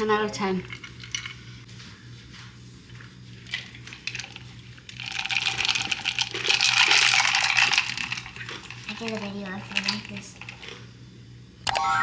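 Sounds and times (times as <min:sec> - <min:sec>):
ice cubes clinking in a glass: 0:05.0 - 0:10.8.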